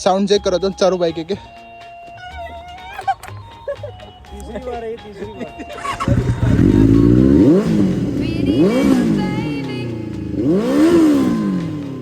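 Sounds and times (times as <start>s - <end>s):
motorcycle engine revving: 5.6s - 12.0s.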